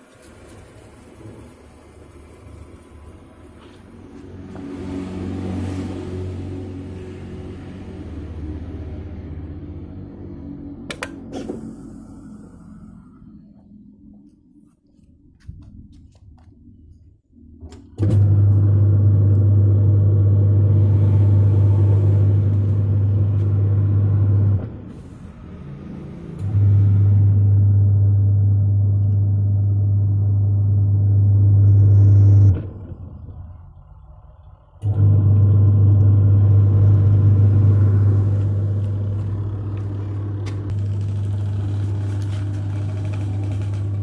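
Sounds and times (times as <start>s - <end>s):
washing machine motor humming: 18.0s - 24.8s, 26.2s - 33.4s, 34.8s - 44.0s.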